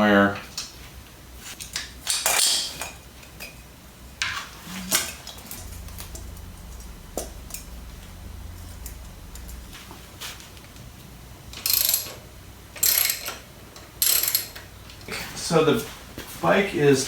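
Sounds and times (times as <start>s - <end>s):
low steady hum: 3.7s - 17.0s.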